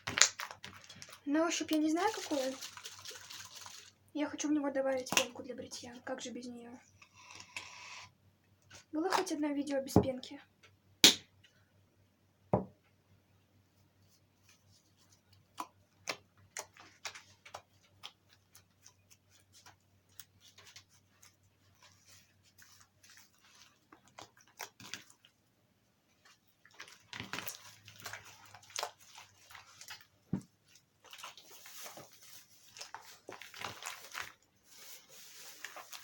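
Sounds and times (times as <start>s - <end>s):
slime squelching by hand: 26.2s - 36.0s.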